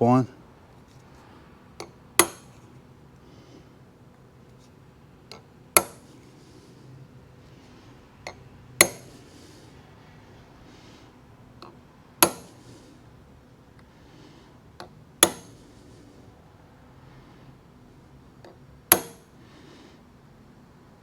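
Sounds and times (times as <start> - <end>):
hammer striking metal punch: 1.8 - 2.5, 5.8 - 6.1, 8.8 - 9.2, 12.2 - 12.6, 14.8 - 15.6, 18.9 - 19.3.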